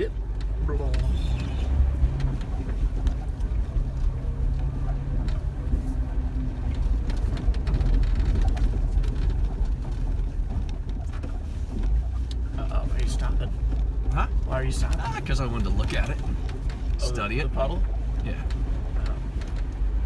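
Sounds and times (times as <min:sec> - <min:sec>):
knocks and rattles over bumps: 0:00.0 - 0:20.0
low engine and road rumble: 0:00.0 - 0:20.0.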